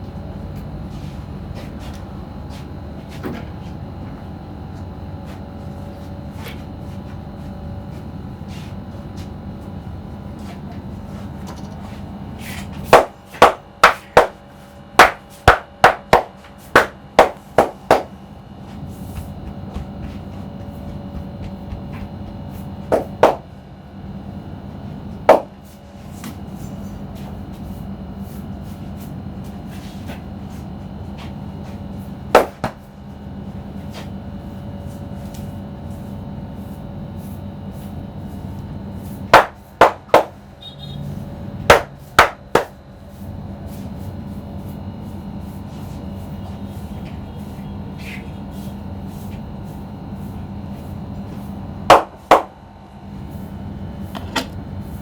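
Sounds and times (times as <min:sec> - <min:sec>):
steady background hum: 0:00.0 - 0:55.0
percussive strikes on a head: 0:13.0 - 0:14.4, 0:25.3 - 0:25.6, 0:41.7 - 0:42.7.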